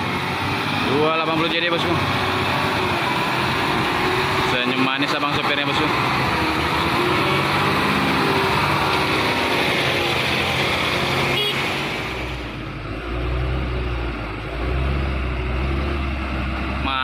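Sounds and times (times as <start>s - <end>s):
diesel truck driving past: 0.0s - 17.0s.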